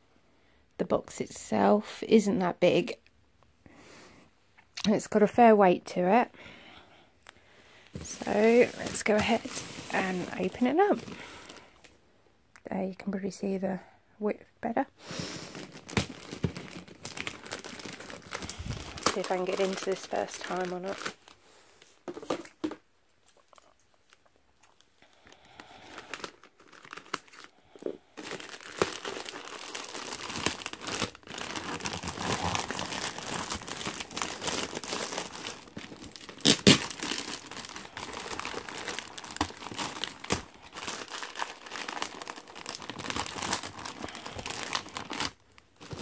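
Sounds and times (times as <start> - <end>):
packaging crinkling and tearing: 15.3 - 21.4, 23.3 - 46.0.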